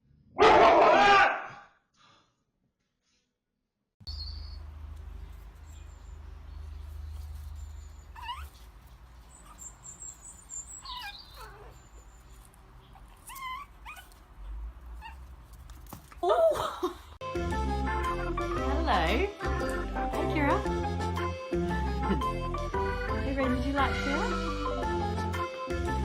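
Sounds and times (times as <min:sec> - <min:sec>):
dog whining: 0:07.9 - 0:15.3.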